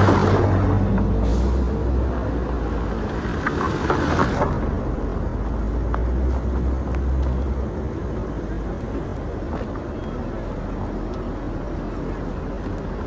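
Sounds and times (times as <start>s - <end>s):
traffic engines rumbling: 0.0s - 13.0s.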